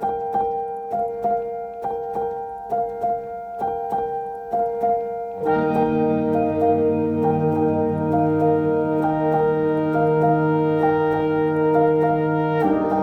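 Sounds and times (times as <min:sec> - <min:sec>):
piano playing repeating pattern: 0:00.0 - 0:13.0
sustained low notes: 0:05.4 - 0:13.0.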